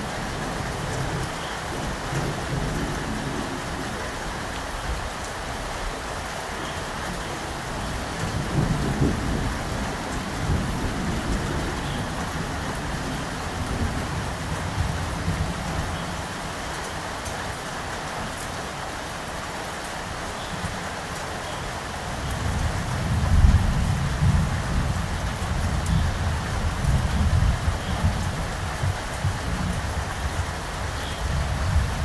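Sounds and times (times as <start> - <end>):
steady rain falling: 0.0 - 32.0
low rolling thunder: 7.8 - 16.2, 22.2 - 32.0.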